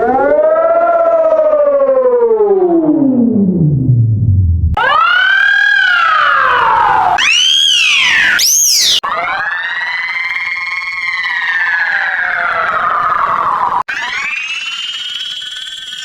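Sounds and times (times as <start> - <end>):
emergency siren wailing: 4.8 - 16.0.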